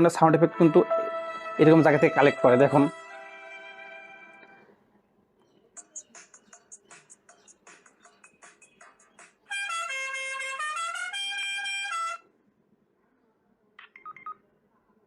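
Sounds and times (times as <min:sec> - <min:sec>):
faint chirp: 0:05.4 - 0:09.3.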